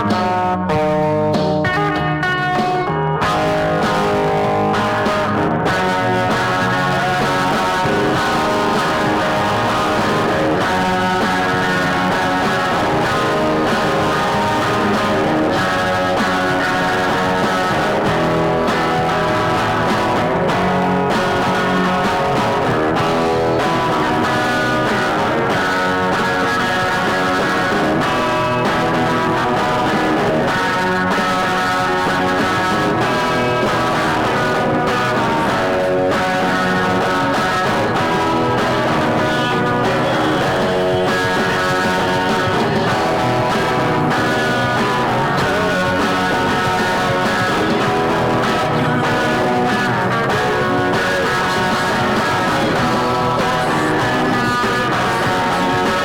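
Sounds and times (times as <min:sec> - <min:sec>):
guitar rock music: 0:00.0 - 0:56.0.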